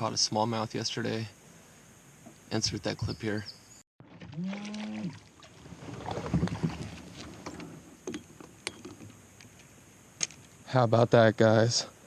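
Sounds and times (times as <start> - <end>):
water splashing: 4.0 - 8.4.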